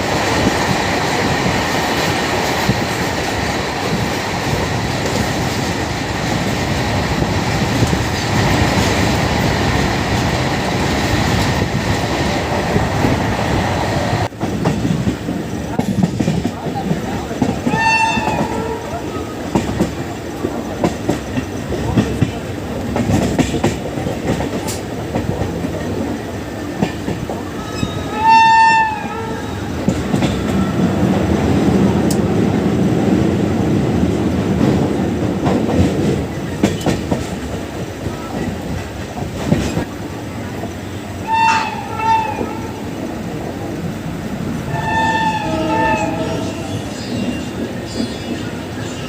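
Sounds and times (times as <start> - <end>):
train rumbling with rail clicks: 0.0 - 49.0
shrill train horn: 17.6 - 19.3, 27.6 - 29.7, 41.2 - 42.8, 44.7 - 47.2.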